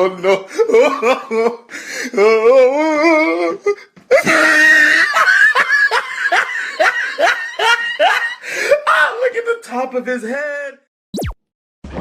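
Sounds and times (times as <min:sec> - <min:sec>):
hysterical laughter: 0:04.1 - 0:08.9.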